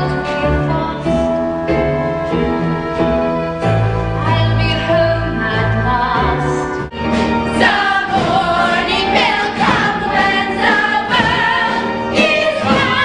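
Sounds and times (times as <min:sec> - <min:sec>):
instrumental accompaniment: 0:00.0 - 0:13.0
group of voices singing: 0:06.4 - 0:13.0.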